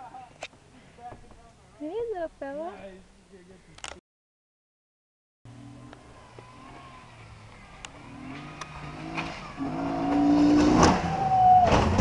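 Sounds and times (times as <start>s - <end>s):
car engine approaching: 5.5s - 12.0s.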